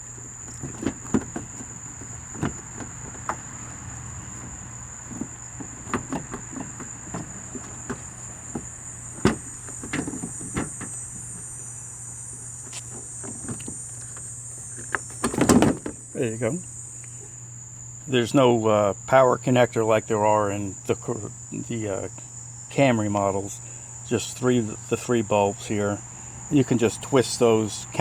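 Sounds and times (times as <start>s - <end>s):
plastic clicking and creaking: 12.6s - 16.0s.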